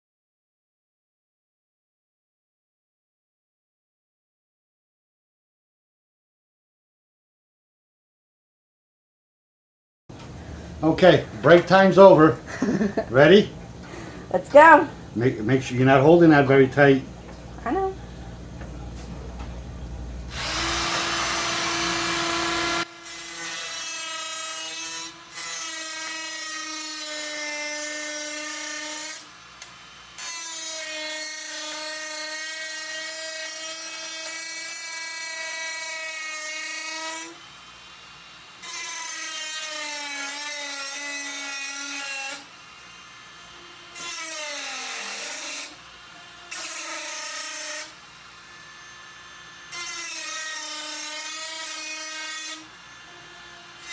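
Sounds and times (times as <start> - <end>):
handheld power tool whining: 20.3 - 53.9.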